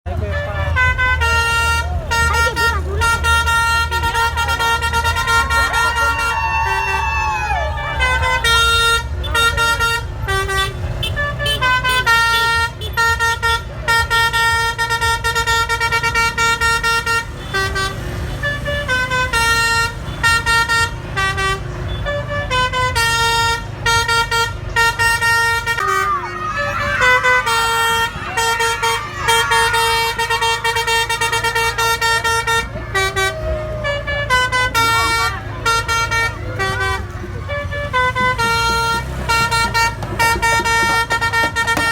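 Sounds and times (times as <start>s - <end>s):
low engine rumble: 0.0s - 41.9s
musical bus air horn: 0.1s - 41.9s.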